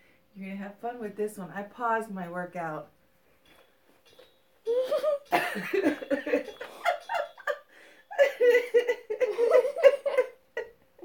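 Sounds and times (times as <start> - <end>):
woman laughing: 4.7 - 11.0.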